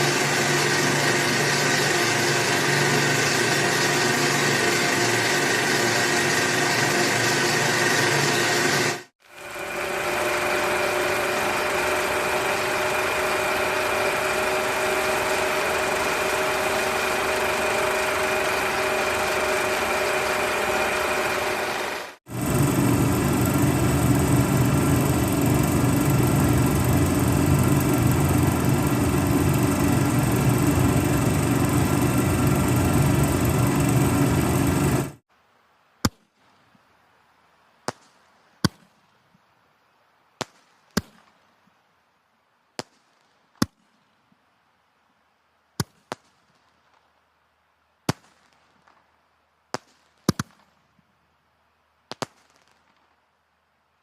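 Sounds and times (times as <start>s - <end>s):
loud engine running: 0.0s - 35.2s.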